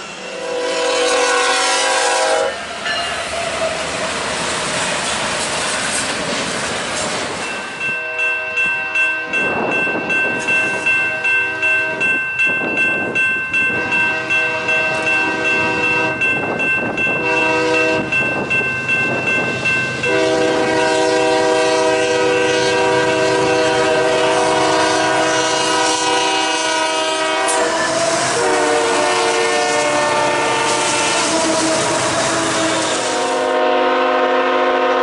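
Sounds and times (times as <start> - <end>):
locomotive air horn blasts: 0.2 - 3.5, 7.8 - 9.4, 13.7 - 16.2, 17.1 - 18.2, 20.0 - 35.0.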